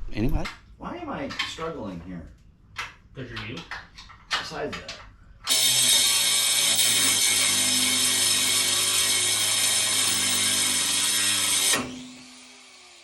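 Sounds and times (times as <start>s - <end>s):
power tool running and winding down: 5.5s - 13.0s.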